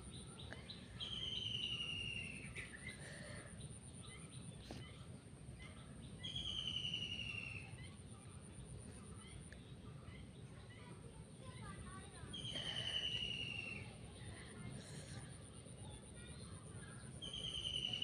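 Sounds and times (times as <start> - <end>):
steady background noise: 0.0 - 18.0
bird trilled call: 6.2 - 7.9.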